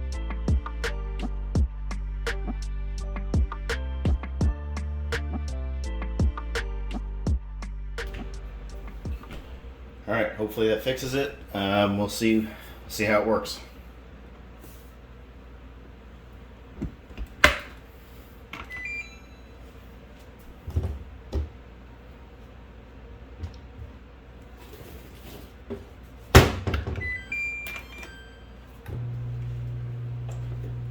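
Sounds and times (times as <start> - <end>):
dishwasher door clunking: 16.8 - 17.8, 26.3 - 27.2.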